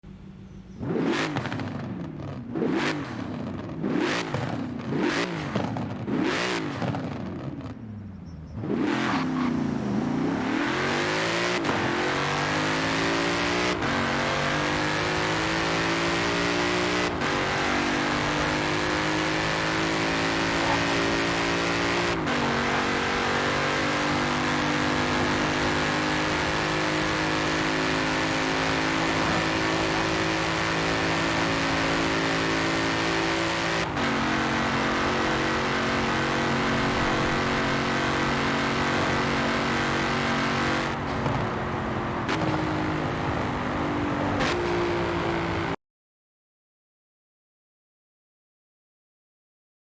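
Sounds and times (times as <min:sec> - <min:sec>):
road and wind rush: 0:00.0 - 0:45.8
car engine accelerating: 0:00.1 - 0:45.8.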